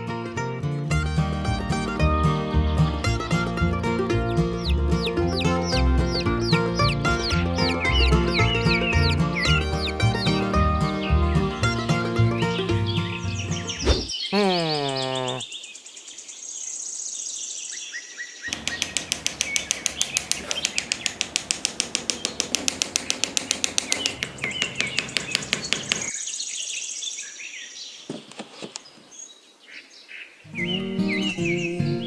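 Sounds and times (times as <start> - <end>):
birds chirping: 1.0 - 28.2, 28.8 - 32.0
fast even strokes: 18.5 - 26.1.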